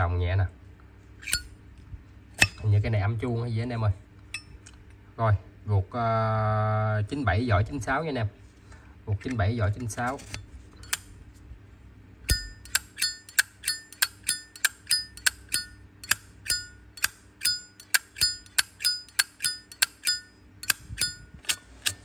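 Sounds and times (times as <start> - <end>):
lighter lid clicking with ring: 12.3 - 21.2.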